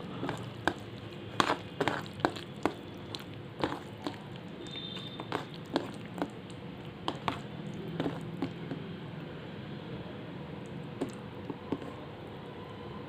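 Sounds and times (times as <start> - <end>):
crunching fried fish: 0.0 - 8.8.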